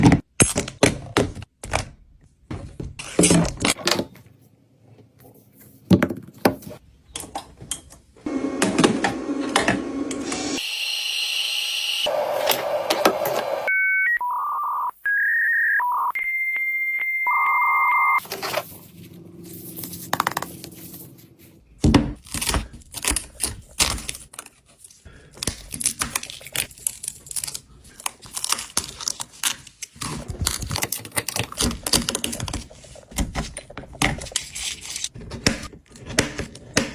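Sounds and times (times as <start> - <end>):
short electronic beeps: 13.7 - 18.2.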